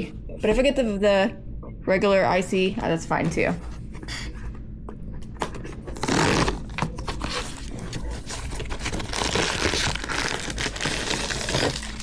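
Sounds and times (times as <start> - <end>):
packaging crinkling and tearing: 5.9 - 12.0.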